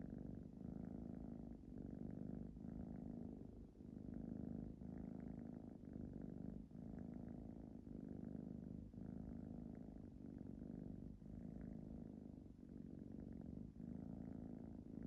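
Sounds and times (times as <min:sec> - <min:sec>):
cat purring: 0:00.0 - 0:15.0.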